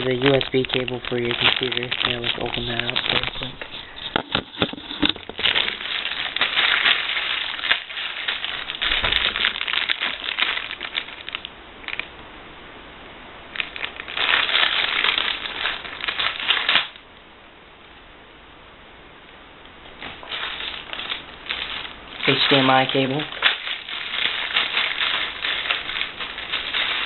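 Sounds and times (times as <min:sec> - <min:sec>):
crinkly packaging crackling: 0:00.0 - 0:12.1, 0:13.5 - 0:17.1, 0:19.9 - 0:27.0.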